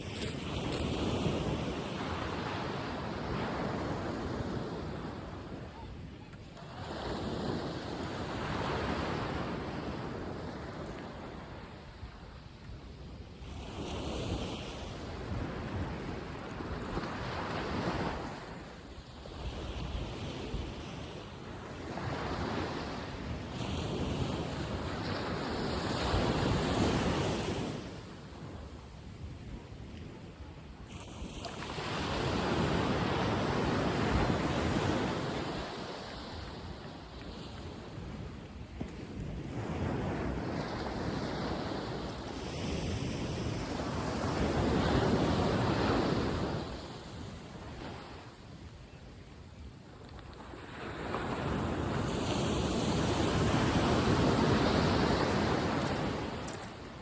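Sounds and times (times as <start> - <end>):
sea waves breaking on beach: 0.0 - 5.6, 30.8 - 48.4, 50.3 - 57.0
sea waves breaking: 50.4 - 57.0.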